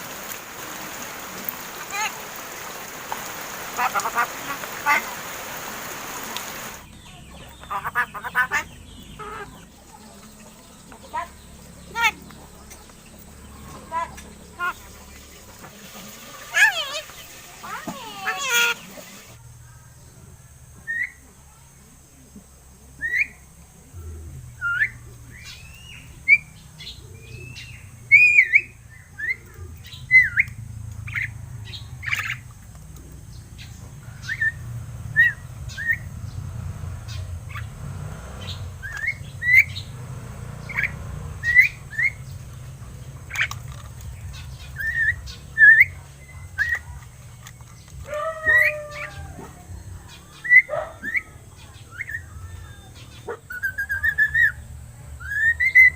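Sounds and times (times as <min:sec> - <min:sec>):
myna birds whistling and squawking: 0:03.6 - 0:19.4, 0:23.0 - 0:23.5, 0:24.6 - 0:32.5, 0:33.6 - 0:36.4, 0:38.4 - 0:40.0, 0:40.6 - 0:55.9.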